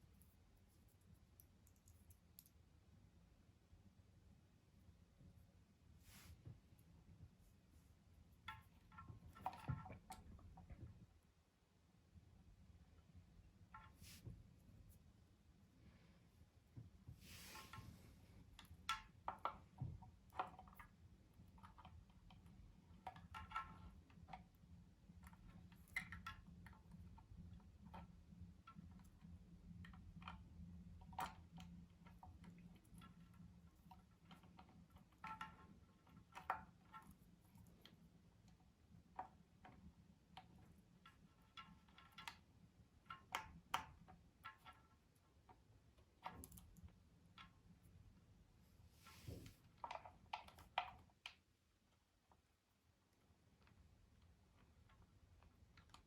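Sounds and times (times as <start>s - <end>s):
faint low hum: 0.0s - 56.0s
small clicks and metallic clinks: 1.0s - 2.6s.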